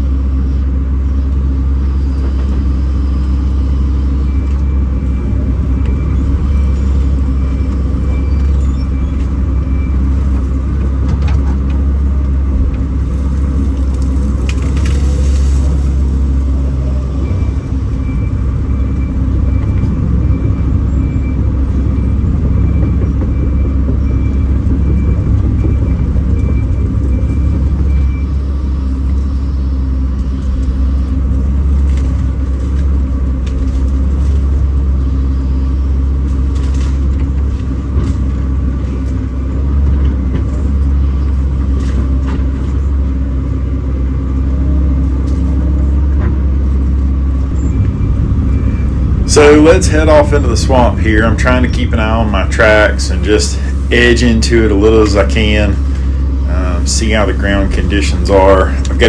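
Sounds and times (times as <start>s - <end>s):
excavator diesel engine running: 0.0s - 59.0s
pulsed high tone: 47.5s - 59.0s.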